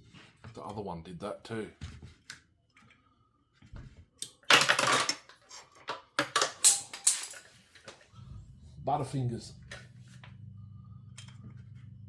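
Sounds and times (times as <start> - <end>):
metal tools clinking on workbench: 6.2 - 7.6.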